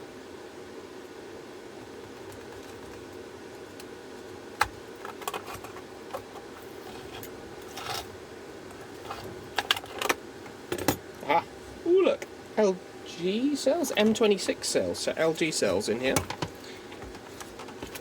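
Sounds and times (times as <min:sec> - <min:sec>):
steady low hum: 0:00.0 - 0:18.0
clicks and knocks of handling: 0:04.6 - 0:08.1, 0:16.1 - 0:18.0.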